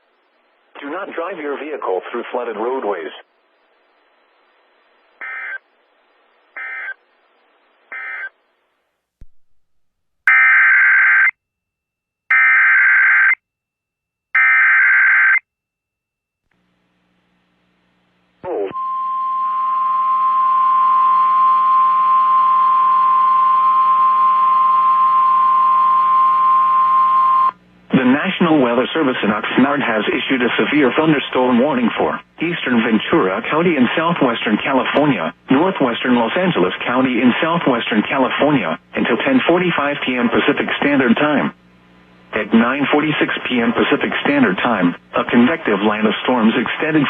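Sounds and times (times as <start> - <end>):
screeching data bursts: 5.2 - 5.6, 6.6 - 7.0, 7.9 - 8.3.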